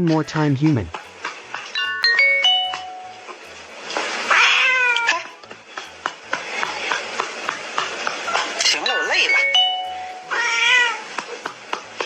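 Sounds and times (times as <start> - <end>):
music with steady beat and bells: 1.7 - 3.6, 8.2 - 10.6
cat meowing: 4.3 - 5.4, 10.3 - 11.1.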